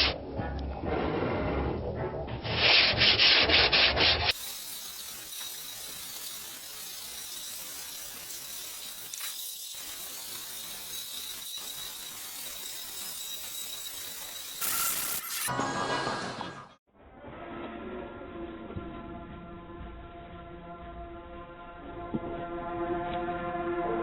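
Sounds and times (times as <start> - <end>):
sanding strokes on body filler: 2.6 - 15.2.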